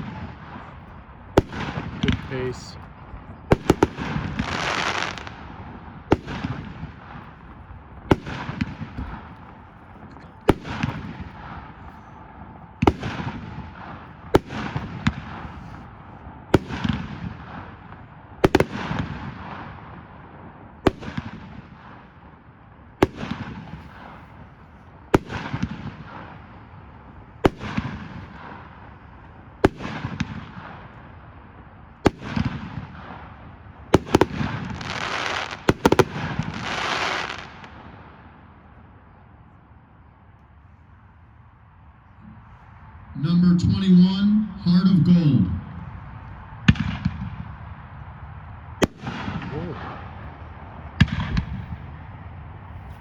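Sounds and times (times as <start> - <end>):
firework bangs: 0.0 - 2.9, 3.5 - 15.9, 16.5 - 22.3, 23.0 - 31.2, 32.0 - 38.6, 45.6 - 53.0
firework hiss: 3.9 - 5.3.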